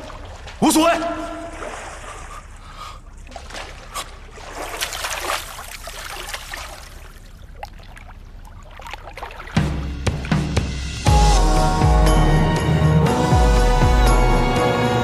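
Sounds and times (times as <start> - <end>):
pool water splashing: 0.0 - 11.0.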